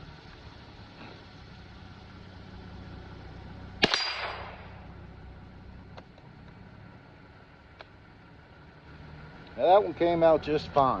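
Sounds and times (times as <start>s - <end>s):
rifle shot: 3.8s - 4.9s.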